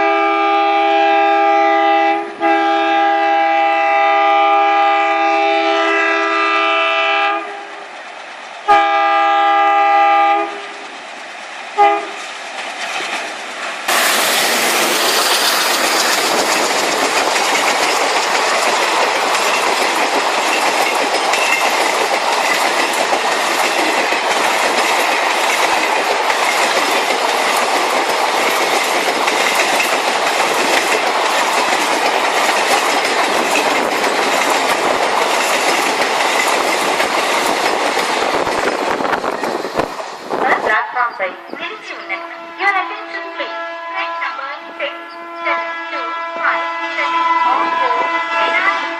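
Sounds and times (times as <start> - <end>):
train horn blasts: 0.0 - 7.8, 8.7 - 10.6, 11.8 - 12.2, 42.0 - 48.9
train running with wheel clatter: 0.0 - 48.9.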